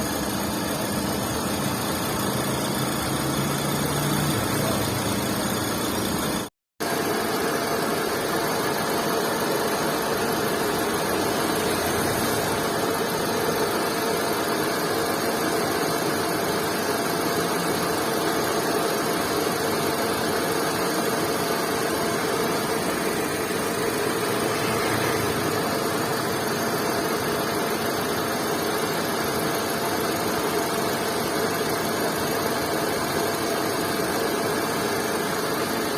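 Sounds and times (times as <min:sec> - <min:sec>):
car engine idling: 0:00.0 - 0:06.5, 0:20.6 - 0:33.5.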